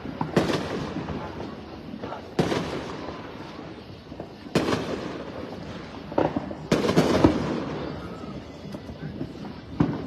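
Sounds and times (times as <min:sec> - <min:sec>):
fireworks banging with echo: 0:00.0 - 0:10.0.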